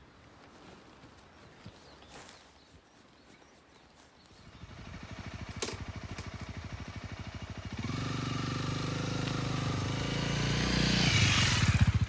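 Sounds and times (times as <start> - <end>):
motorcycle engine revving: 4.5 - 12.0.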